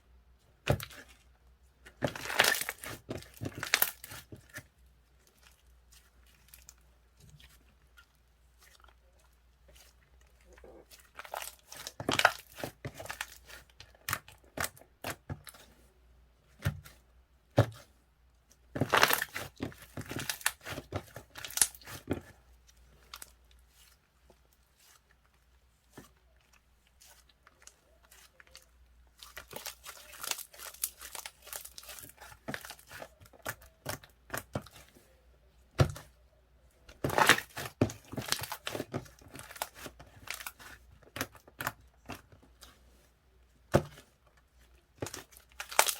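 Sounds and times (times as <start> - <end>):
wrapping material crinkling and tearing: 2.1 - 4.3, 18.8 - 22.1, 22.7 - 34.7, 37.0 - 43.0, 44.2 - 45.9.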